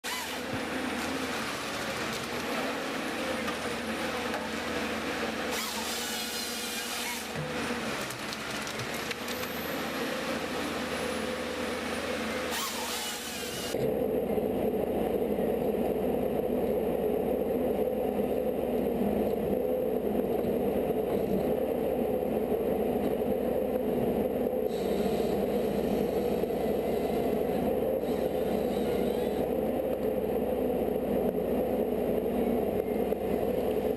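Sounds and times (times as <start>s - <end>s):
busy mechanical noise: 0.0s - 33.9s
steady engine drone: 0.0s - 33.9s.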